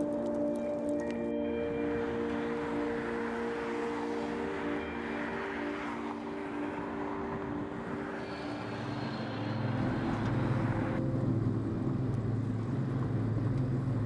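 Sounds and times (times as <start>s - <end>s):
vehicle engine running: 7.7s - 14.0s.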